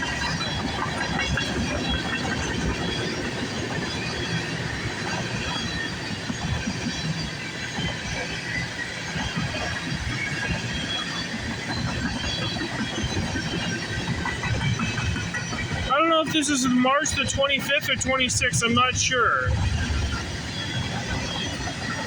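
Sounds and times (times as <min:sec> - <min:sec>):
freight train wheels rumbling: 0:00.0 - 0:22.0
faint high wheel squeals: 0:00.2 - 0:15.9.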